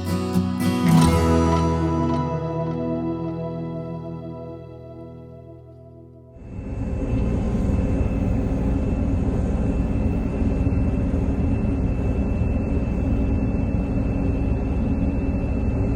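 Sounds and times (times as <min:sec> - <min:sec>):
engine rumbling with high whine: 0:06.4 - 0:15.9.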